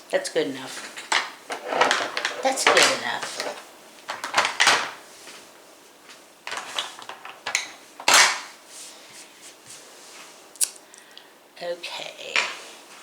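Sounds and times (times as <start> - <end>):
small hard objects clattering: 0.8 - 5.0, 6.5 - 8.5.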